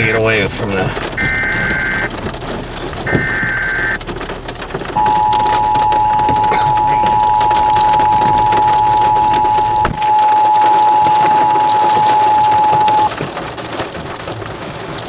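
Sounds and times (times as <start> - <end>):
rain patter on vehicle: 0.0 - 15.0
two-tone alert signal from radio: 1.2 - 2.1, 5.0 - 13.1.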